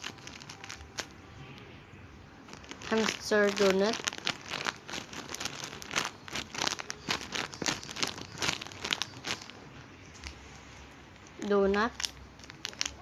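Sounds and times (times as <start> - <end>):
plastic packaging crinkling: 0.0 - 1.2, 2.5 - 9.6, 11.4 - 13.0.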